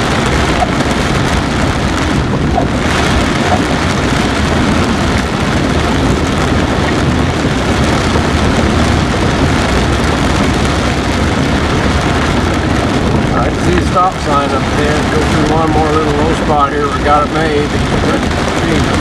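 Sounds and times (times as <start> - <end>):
heavy rain: 0.0 - 19.0
low engine hum: 0.0 - 19.0.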